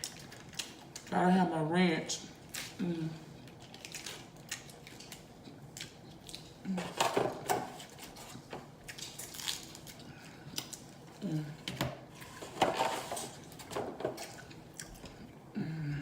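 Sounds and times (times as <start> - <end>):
crunchy chewing: 7.7 - 11.0.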